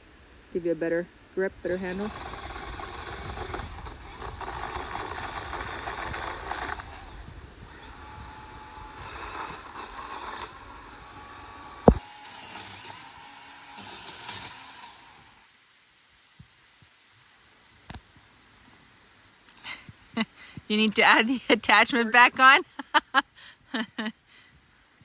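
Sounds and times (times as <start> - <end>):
pole saw running: 1.6 - 15.5.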